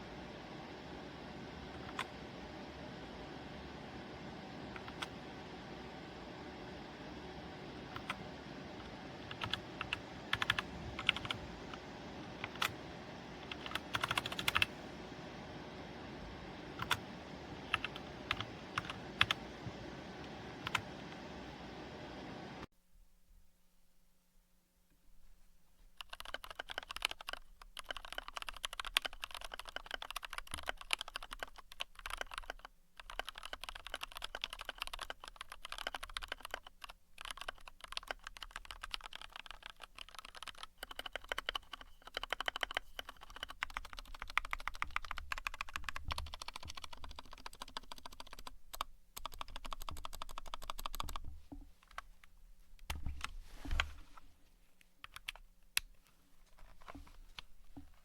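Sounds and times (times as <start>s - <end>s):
mechanical keyboard typing: 1.4s - 2.4s, 4.2s - 5.8s, 7.6s - 15.2s, 16.6s - 21.3s, 26.0s - 51.2s, 55.0s - 55.9s.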